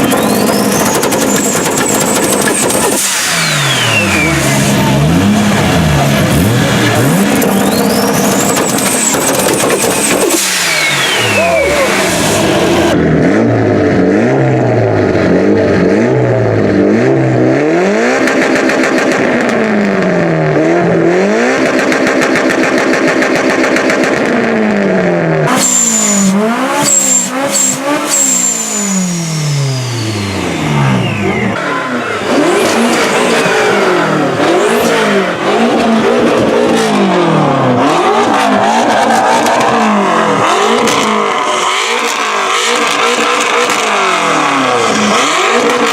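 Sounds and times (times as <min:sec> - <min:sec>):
car engines revving: 0:00.0 - 0:45.9
high whistle sliding down: 0:03.0 - 0:04.8, 0:10.0 - 0:12.0, 0:25.5 - 0:31.6.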